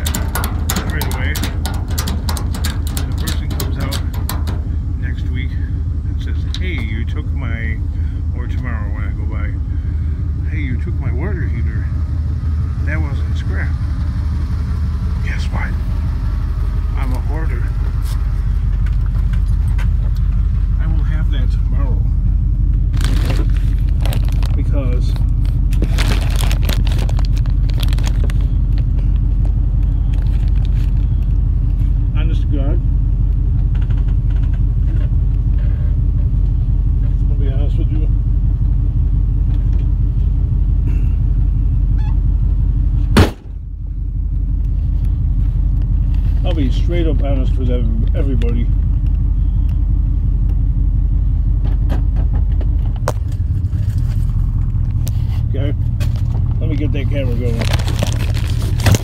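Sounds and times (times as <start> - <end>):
short clicks and rattles: 0.0 - 4.8
light rattles and clicks: 0.0 - 5.2, 6.4 - 7.0, 23.0 - 32.0
truck engine and road rumble: 0.0 - 59.0.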